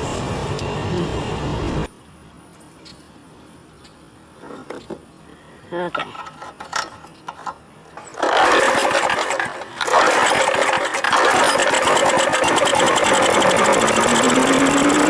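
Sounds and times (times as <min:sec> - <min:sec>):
lawn mower engine running: 0:06.0 - 0:15.0.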